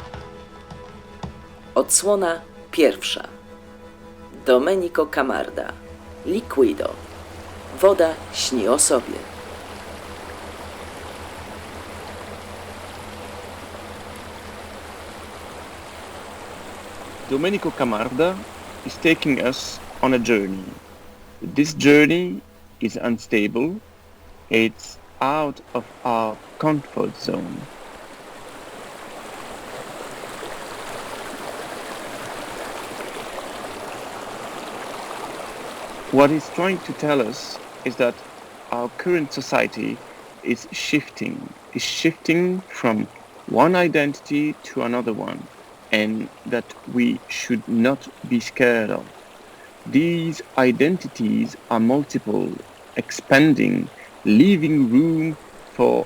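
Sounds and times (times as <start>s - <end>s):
flowing water: 0.0s - 56.0s
faint low hum: 16.2s - 27.7s.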